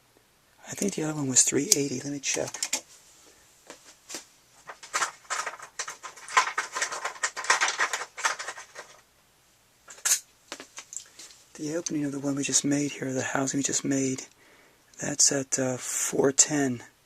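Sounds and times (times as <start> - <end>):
scraping rustles: 0.7 - 9.0.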